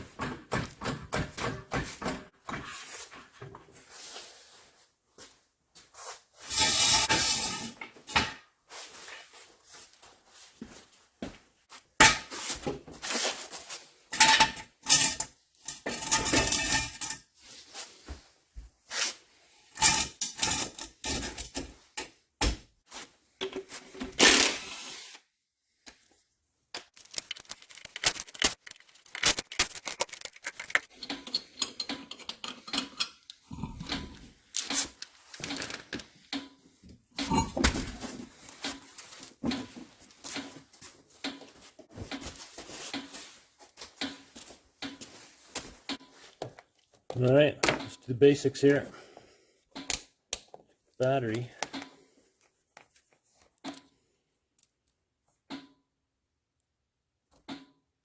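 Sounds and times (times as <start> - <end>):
objects being handled: 25.8 - 48.0, 48.6 - 55.7.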